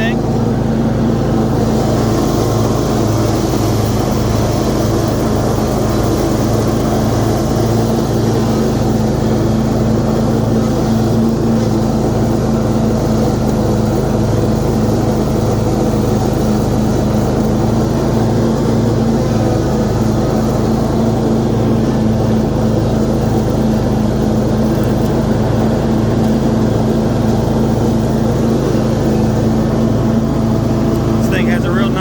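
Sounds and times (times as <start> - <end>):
lawn mower engine cutting grass: 0.0 - 32.0.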